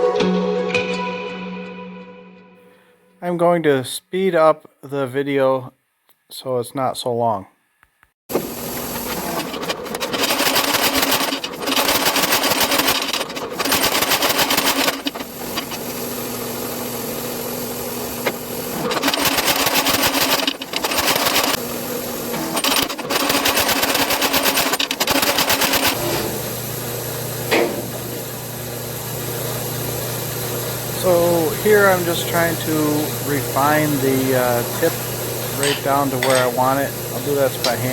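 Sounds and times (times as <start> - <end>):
hammer blows on anvil: 35.6 - 36.7.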